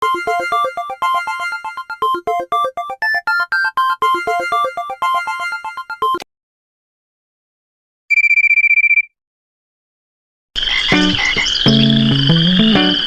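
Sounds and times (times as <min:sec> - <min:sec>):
synthesized phone ringtone: 0:00.0 - 0:06.2.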